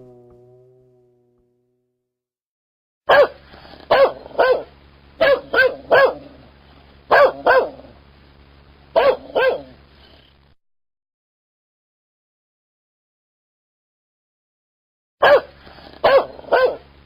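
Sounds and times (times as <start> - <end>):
dog barking: 3.1 - 6.4, 7.1 - 7.9, 9.0 - 9.8, 15.2 - 16.9.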